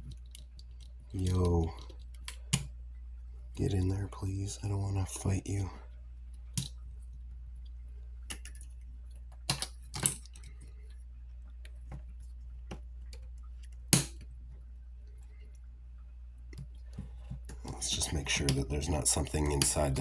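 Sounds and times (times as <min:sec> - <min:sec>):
small clicks and taps: 0:07.6 - 0:18.7.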